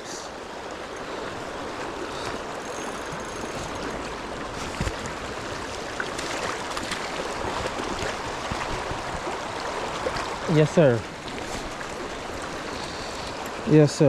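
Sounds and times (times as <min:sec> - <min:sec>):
stream water flowing: 0:00.0 - 0:14.0.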